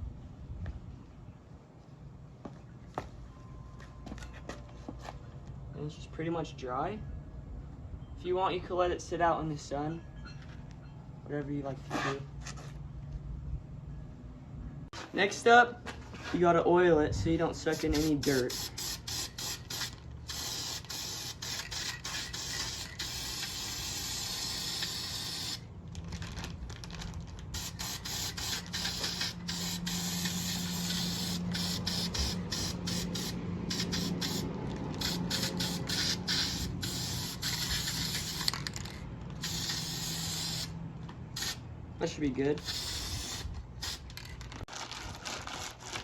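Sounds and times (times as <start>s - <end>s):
aerosol spray hissing: 27.6s - 38.4s, 39.4s - 40.7s, 42.6s - 44.0s.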